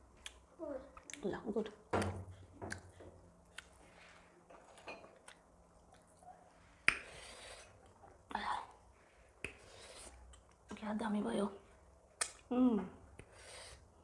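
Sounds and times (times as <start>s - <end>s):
mouth clicks and lip smacks: 12.2s - 12.4s.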